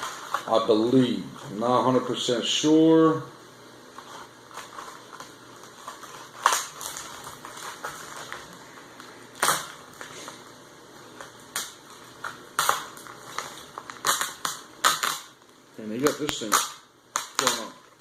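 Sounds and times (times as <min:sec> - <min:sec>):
packaging crackling and rustling: 0:03.9 - 0:18.0
sharp plastic cracks: 0:06.4 - 0:08.4, 0:09.3 - 0:09.8, 0:11.2 - 0:18.0.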